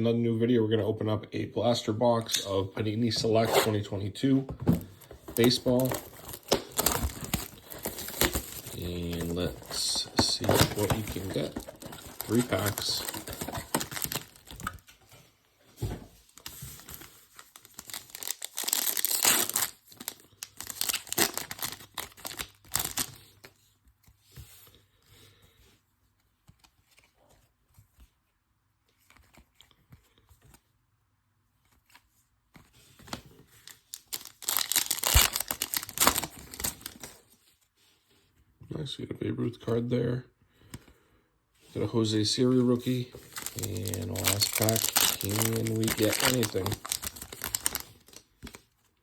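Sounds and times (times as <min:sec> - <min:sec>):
plastic wrappers tearing and crinkling: 0:05.0 - 0:14.9, 0:16.4 - 0:23.2, 0:33.6 - 0:37.2, 0:43.2 - 0:48.6.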